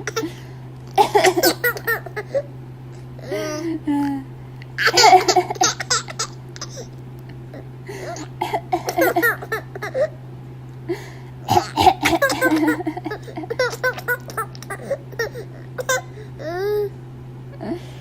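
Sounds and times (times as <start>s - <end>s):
woman fake coughing: 1.0s - 2.0s, 11.5s - 13.2s
baby giggling: 4.8s - 6.9s, 8.0s - 10.1s, 11.5s - 16.9s.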